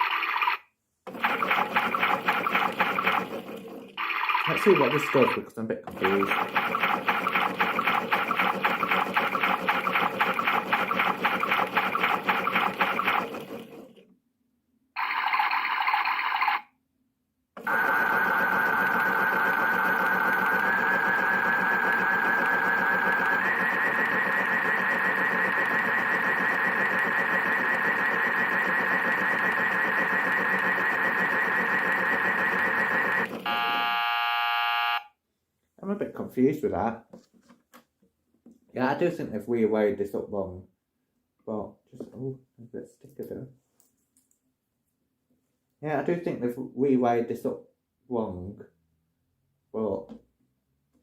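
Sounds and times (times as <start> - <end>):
toy motor pulsing: 0.0 - 14.0, 15.0 - 16.6, 17.6 - 33.8
warbling electronic tone: 4.0 - 5.3, 6.0 - 13.6, 15.0 - 16.6
electronic hum: 17.6 - 35.0.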